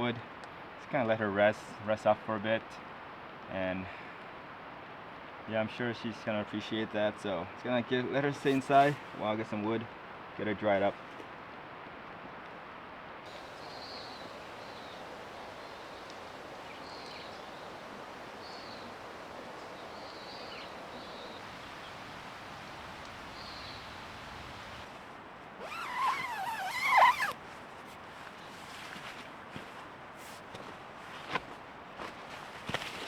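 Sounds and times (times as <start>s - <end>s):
rain falling on tent: 13.3s - 30.7s.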